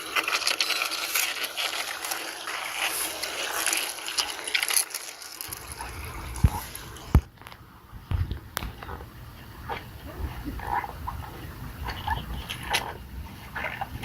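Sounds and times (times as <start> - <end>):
rushing water: 0.0 - 7.3
splashes and scrapes: 0.0 - 7.5, 8.2 - 14.0.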